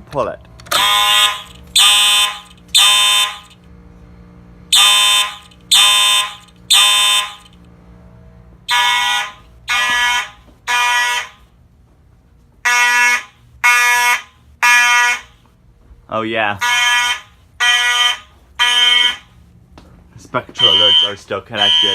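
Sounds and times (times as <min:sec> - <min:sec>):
fire alarm horns blasting: 0:00.7 - 0:03.6, 0:04.7 - 0:07.6, 0:08.6 - 0:11.6, 0:12.6 - 0:15.4, 0:16.5 - 0:19.4, 0:20.5 - 0:21.9.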